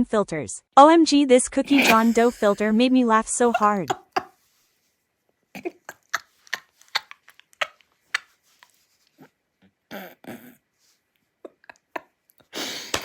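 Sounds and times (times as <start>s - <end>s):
person laughing quietly: 1.7s - 2.8s, 3.4s - 4.4s.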